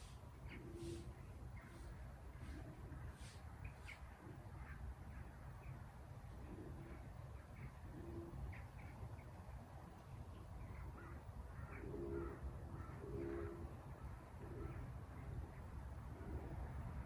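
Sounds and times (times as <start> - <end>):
small birds chirping: 0.0 - 5.8
pigeon cooing: 0.5 - 1.1, 6.4 - 7.0, 11.6 - 13.7, 14.4 - 14.8.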